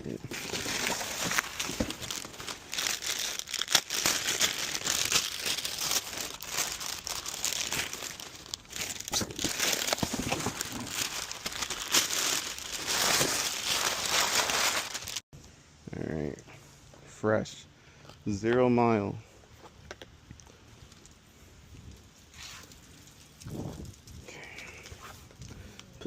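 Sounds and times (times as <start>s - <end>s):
packaging crinkling and tearing: 0.0s - 15.2s.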